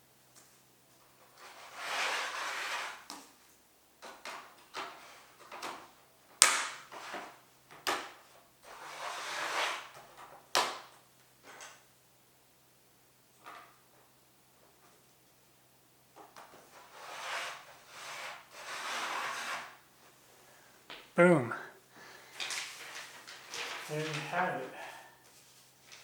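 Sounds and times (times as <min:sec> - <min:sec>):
plastic pieces scraping and rustling: 0:04.0 - 0:05.9, 0:22.3 - 0:24.4.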